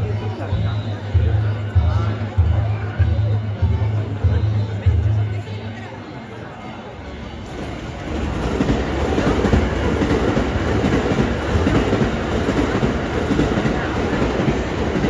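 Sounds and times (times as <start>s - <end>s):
train wheels rushing on rails: 7.3s - 15.0s.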